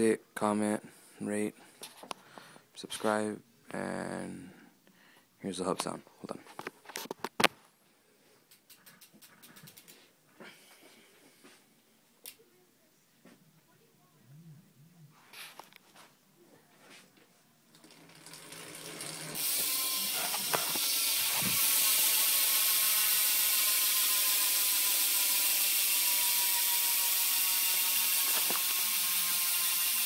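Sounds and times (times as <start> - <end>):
freewheeling hub buzzing: 17.7 - 30.0.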